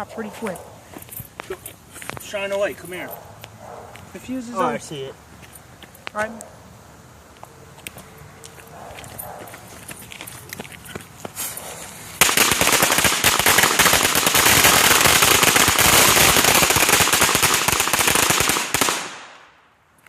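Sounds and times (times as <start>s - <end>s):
firecrackers cracking: 11.3s - 19.6s.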